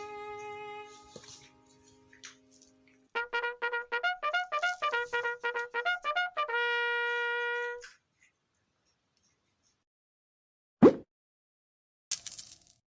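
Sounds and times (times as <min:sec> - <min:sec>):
trumpet playing: 0:00.0 - 0:01.6, 0:03.1 - 0:07.9.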